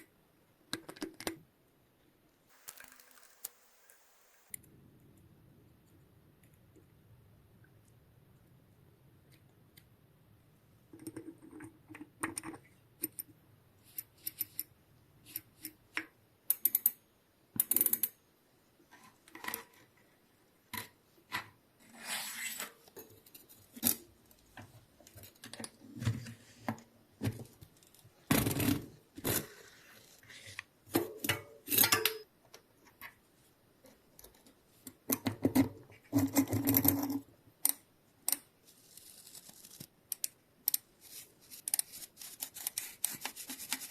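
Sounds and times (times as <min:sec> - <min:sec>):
small metal parts clicking and clinking: 0:02.5 - 0:03.6.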